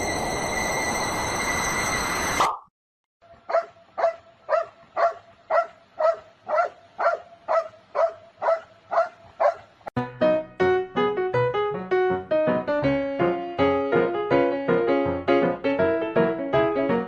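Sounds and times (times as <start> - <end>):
dog barking: 3.4 - 9.7
piano music: 10.0 - 17.0.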